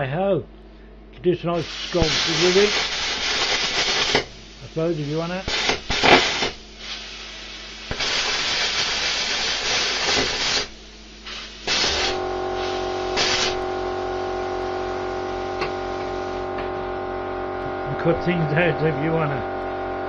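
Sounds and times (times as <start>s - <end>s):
air compressor humming: 0.6s - 20.0s
plasma cutter hissing: 1.6s - 16.7s.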